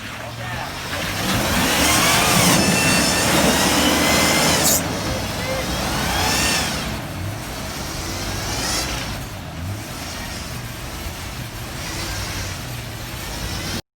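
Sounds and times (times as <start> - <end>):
vehicle engine running: 0.0 - 13.8.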